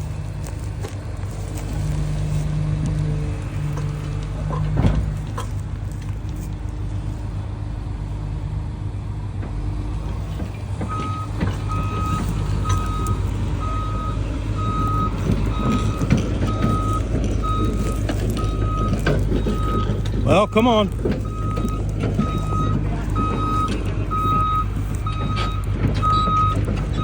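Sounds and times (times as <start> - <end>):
diesel engine of heavy machinery: 0.0 - 27.0
backup alarm beeping: 10.9 - 27.0.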